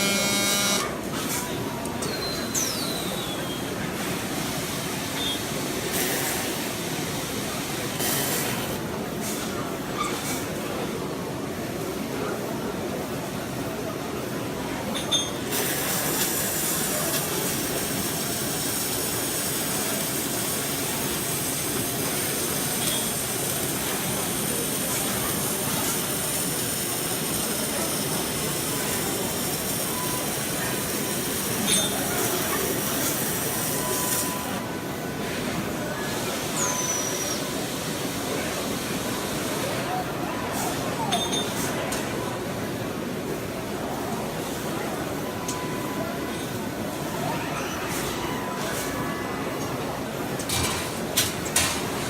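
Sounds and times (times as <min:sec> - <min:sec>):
steady mechanical noise: 0:00.0 - 0:41.0
exhibition hall crowd din: 0:00.0 - 0:52.0.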